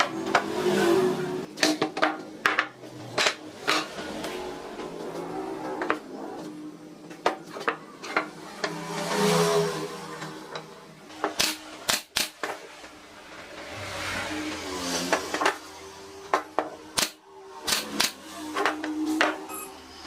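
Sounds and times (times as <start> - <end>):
knocks and clicks of wood and tools: 0.0 - 0.6, 1.5 - 4.3, 5.8 - 9.0, 15.1 - 19.5.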